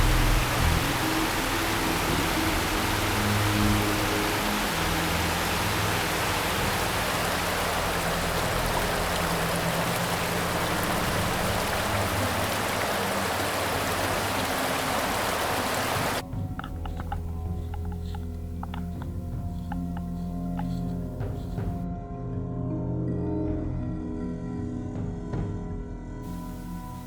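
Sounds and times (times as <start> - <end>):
river rushing: 0.0 - 16.2, 26.3 - 27.0
background music: 0.0 - 27.0.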